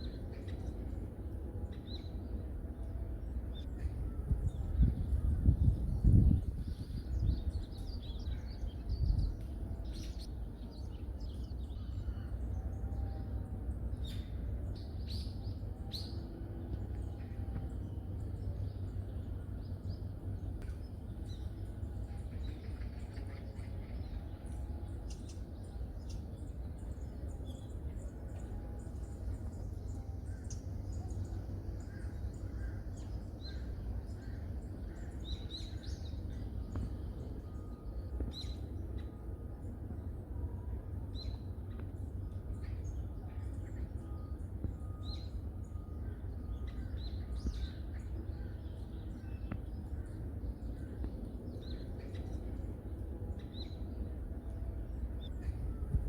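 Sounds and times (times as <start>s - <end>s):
wild birds chirping: 0.0s - 40.2s, 41.0s - 56.0s
steady low rumble: 0.0s - 56.0s.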